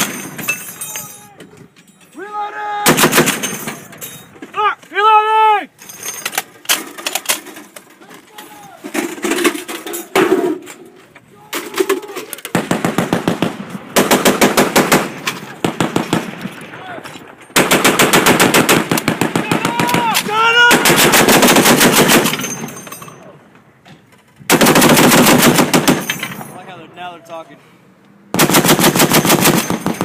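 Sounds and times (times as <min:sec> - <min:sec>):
heavy machine guns firing: 0:02.8 - 0:03.7, 0:12.5 - 0:16.6, 0:17.5 - 0:22.6, 0:24.5 - 0:26.2, 0:28.3 - 0:30.0.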